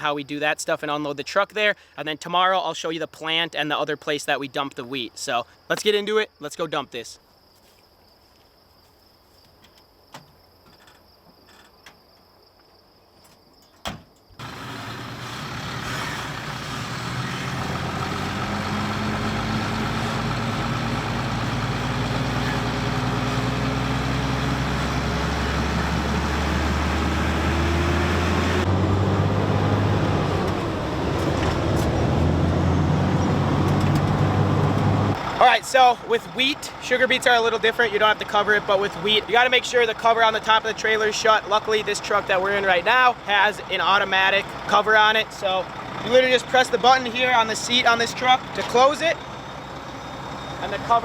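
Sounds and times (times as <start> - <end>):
truck engine pulling away: 14.4 - 51.0.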